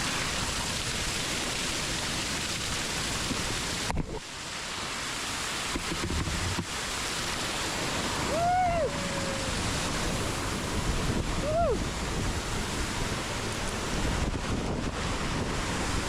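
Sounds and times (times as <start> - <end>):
waterfall rushing: 0.0 - 16.0
person whooping: 8.2 - 9.7, 11.4 - 11.9.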